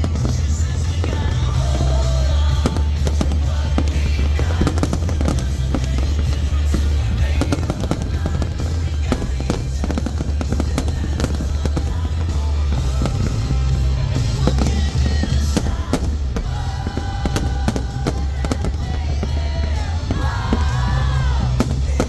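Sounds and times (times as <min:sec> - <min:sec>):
fireworks bangs and crackles: 0:00.0 - 0:22.0
music playing: 0:00.0 - 0:22.0.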